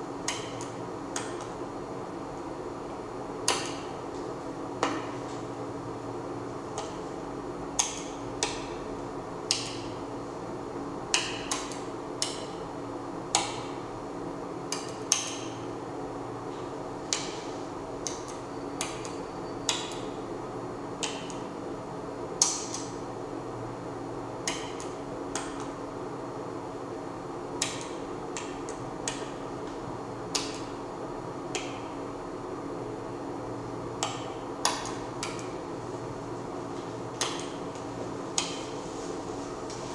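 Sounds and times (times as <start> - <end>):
steady low hum: 0.0 - 39.9
sharp clicks and knocks: 27.6 - 30.8, 34.0 - 35.6, 37.1 - 38.7.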